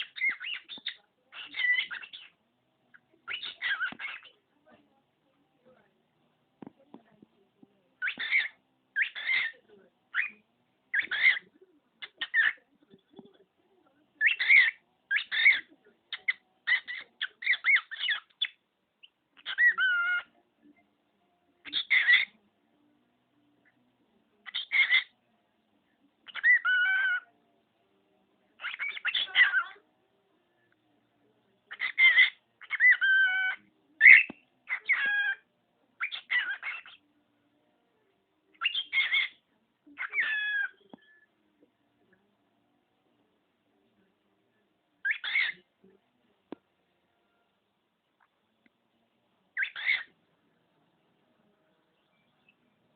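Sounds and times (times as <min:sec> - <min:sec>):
cockatiel vocalizing: 0:00.0 - 0:02.3, 0:03.2 - 0:04.4, 0:08.0 - 0:10.3, 0:10.9 - 0:12.6, 0:14.2 - 0:18.6, 0:19.4 - 0:20.3, 0:21.6 - 0:22.3, 0:24.4 - 0:25.1, 0:26.2 - 0:27.3, 0:28.6 - 0:29.8, 0:31.7 - 0:37.0, 0:38.5 - 0:41.2, 0:45.0 - 0:45.6, 0:49.6 - 0:50.1
cockatiel mimicking speech: 0:08.0 - 0:09.5, 0:11.0 - 0:11.4, 0:40.0 - 0:40.8, 0:45.1 - 0:45.6.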